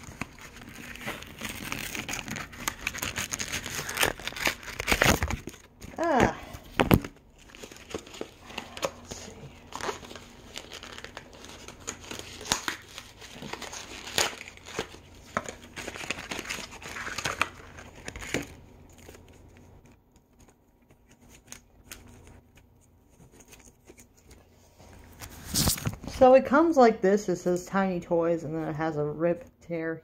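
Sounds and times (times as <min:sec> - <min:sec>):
packaging crinkling and tearing: 0:00.0 - 0:24.4.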